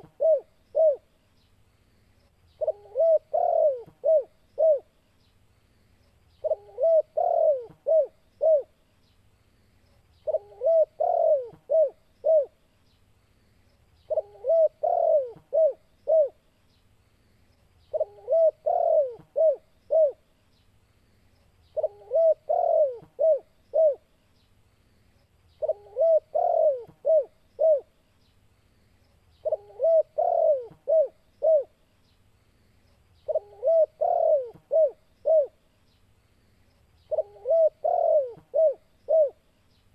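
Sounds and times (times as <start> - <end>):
dove cooing: 0.0 - 1.1, 2.6 - 4.9, 6.4 - 8.8, 10.2 - 12.6, 14.1 - 16.4, 17.9 - 20.2, 21.7 - 24.1, 25.6 - 27.9, 29.4 - 31.8, 33.2 - 35.6, 37.1 - 39.4.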